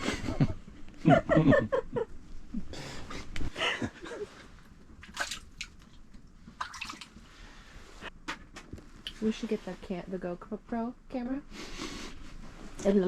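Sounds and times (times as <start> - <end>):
water splashing and dripping: 5.0 - 7.3.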